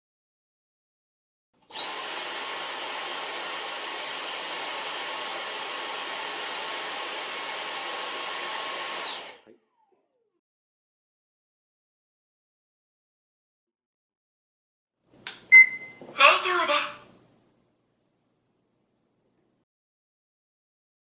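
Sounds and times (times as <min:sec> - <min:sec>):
blower running with hiss: 0:01.7 - 0:09.5.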